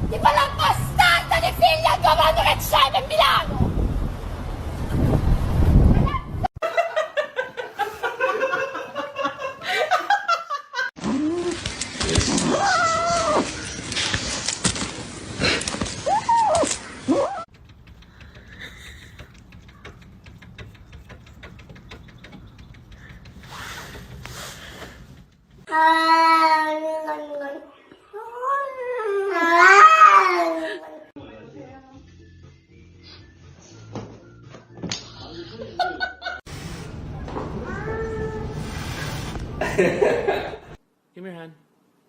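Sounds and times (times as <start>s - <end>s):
people laughing: 6.6s - 10.9s, 18.4s - 19.4s, 35.2s - 36.5s, 39.6s - 40.8s
faint ticks: 17.5s - 24.4s
cat meowing: 37.6s - 38.6s.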